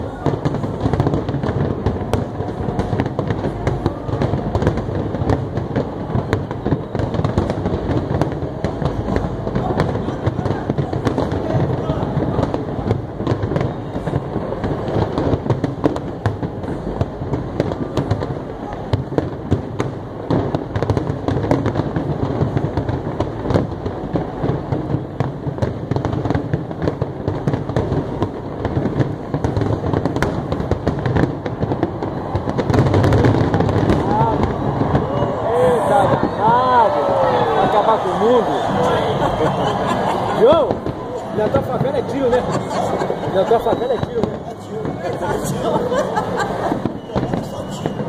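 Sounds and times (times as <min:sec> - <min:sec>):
fireworks crackling: 0:00.0 - 0:48.0
shells exploding rumble: 0:18.9 - 0:48.0.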